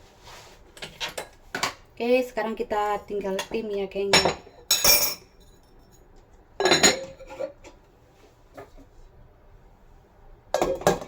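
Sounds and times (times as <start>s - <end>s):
pots and utensils clattering: 3.4s - 5.3s, 6.6s - 7.8s, 10.5s - 11.0s.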